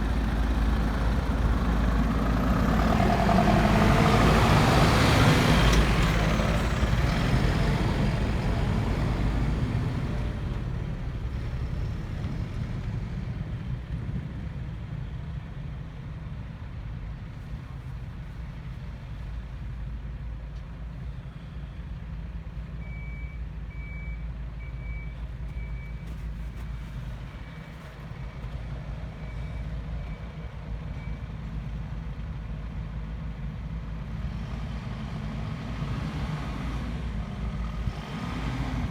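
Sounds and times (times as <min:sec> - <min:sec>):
diesel truck engine running: 0:00.0 - 0:16.3, 0:24.5 - 0:38.9
reversing alarm beeps: 0:22.8 - 0:26.1.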